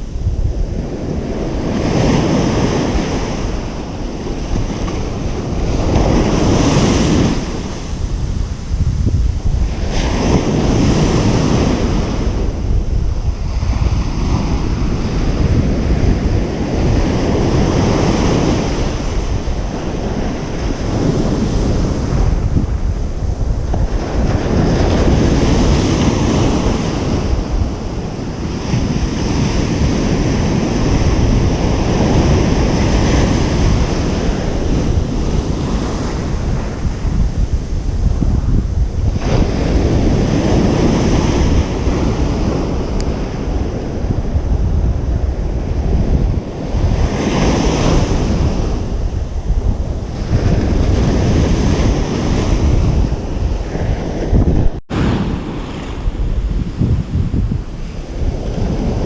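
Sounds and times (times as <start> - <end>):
ocean waves breaking: 0.0 - 59.0
wind buffeting microphone: 0.0 - 59.0.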